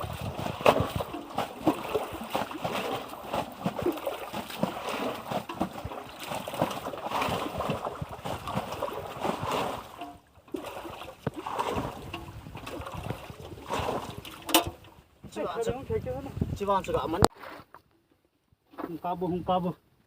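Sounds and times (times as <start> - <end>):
water splashing and lapping: 0.0 - 15.6.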